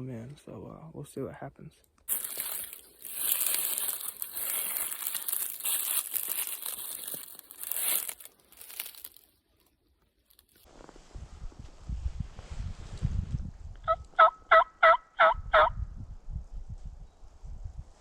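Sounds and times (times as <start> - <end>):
rustling through dry cover: 2.1 - 13.6
low rumble: 10.7 - 13.9.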